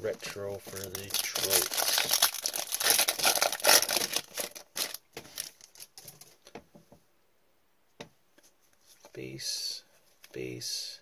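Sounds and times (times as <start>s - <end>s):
foil wrapper crinkling: 0.2s - 6.2s.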